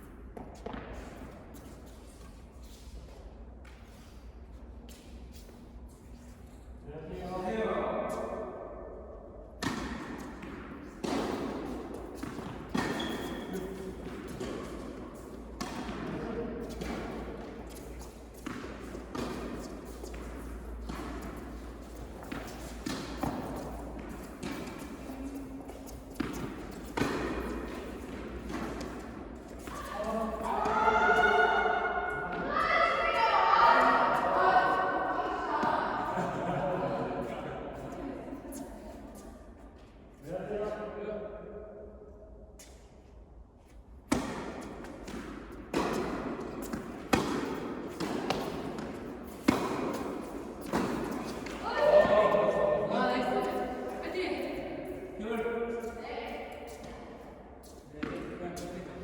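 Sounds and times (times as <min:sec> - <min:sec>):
tennis ball bouncing: 0:00.4 - 0:01.1, 0:09.6 - 0:31.4, 0:44.1 - 0:53.7
rackets hitting tennis ball: 0:09.5 - 0:36.3, 0:43.7 - 0:58.9.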